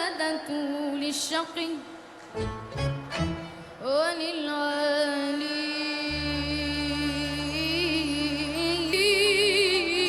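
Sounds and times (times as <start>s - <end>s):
instrumental backing: 2.4s - 3.8s
low bass tone: 6.1s - 9.1s.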